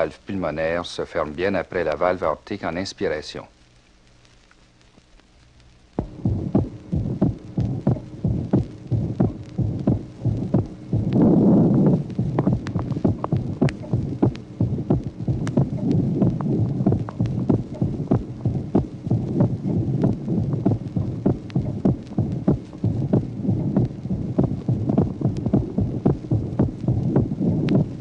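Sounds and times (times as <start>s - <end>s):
steady low hum: 0.0s - 28.0s
heartbeat thuds and clicks: 5.9s - 28.0s.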